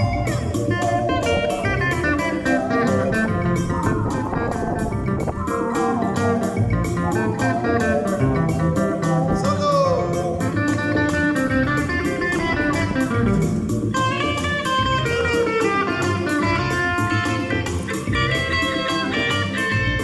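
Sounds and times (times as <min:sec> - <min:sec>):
plucked guitar music with beat: 0:00.0 - 0:20.0
sliding guitar notes: 0:00.0 - 0:20.0.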